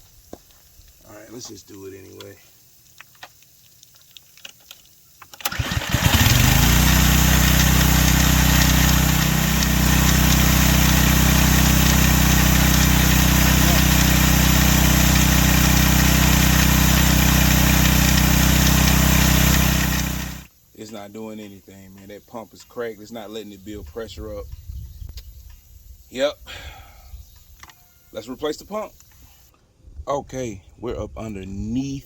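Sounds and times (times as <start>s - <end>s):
engine starting and running: 5.3s - 20.5s.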